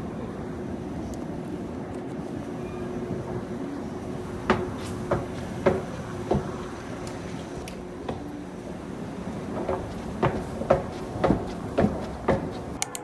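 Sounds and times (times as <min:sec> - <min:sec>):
sharp knocks: 0:04.0 - 0:12.8.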